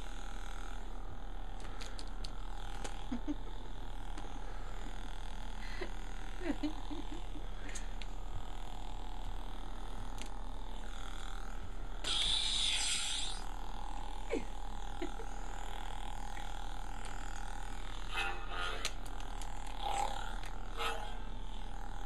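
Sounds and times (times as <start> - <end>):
lightsaber humming: 0.0 - 22.0
crackling hiss effect: 12.0 - 13.4.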